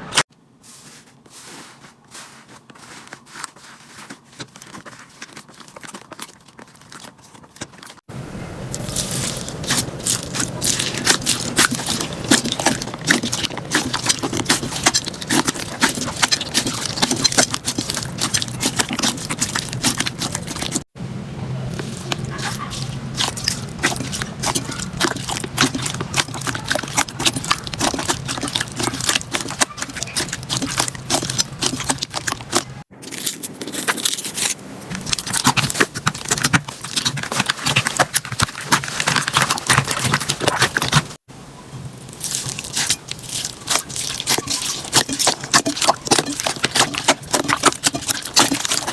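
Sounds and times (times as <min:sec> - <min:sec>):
slime crackling and popping: 0:08.7 - 0:20.9, 0:21.7 - 0:41.2, 0:42.1 - 0:48.9.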